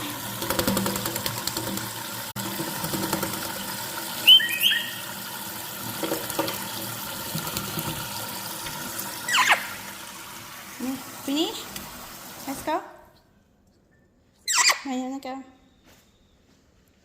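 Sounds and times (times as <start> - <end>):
tap water running and splashing: 0.0 - 12.8
bird whistled calls: 4.2 - 5.1, 9.3 - 9.7.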